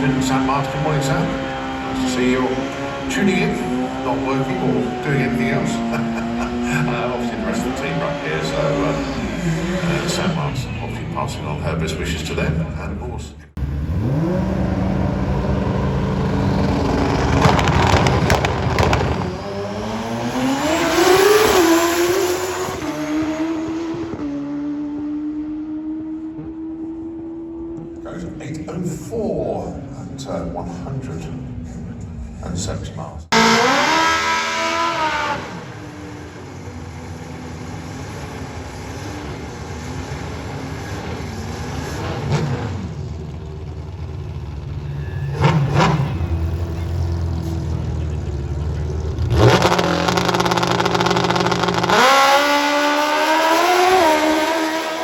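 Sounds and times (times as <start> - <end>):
engine crackles: 13.6 - 22.7, 33.3 - 54.9
motorcycle engine at full throttle: 13.6 - 29.5, 42.8 - 55.0.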